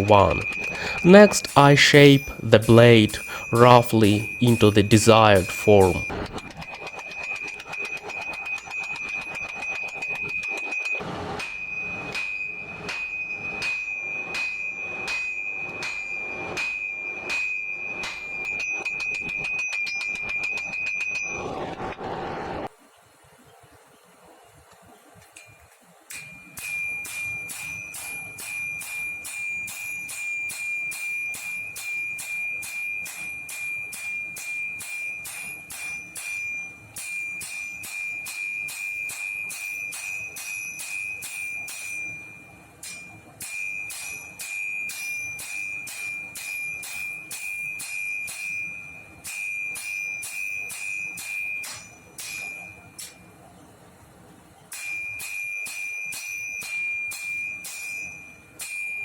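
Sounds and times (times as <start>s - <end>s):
hammer striking steel on anvil: 11.4s - 18.8s, 49.3s - 53.2s.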